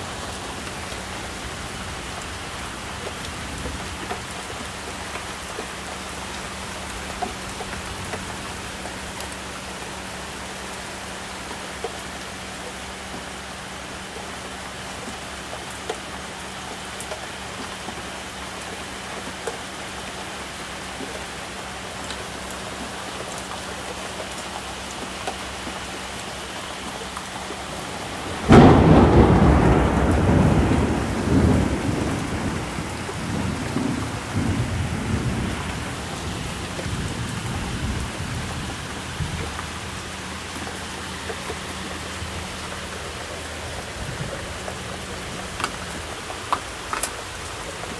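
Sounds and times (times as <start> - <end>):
thunderclap rumbling: 0.0 - 9.3, 27.2 - 47.9
steady rain falling: 0.0 - 47.9.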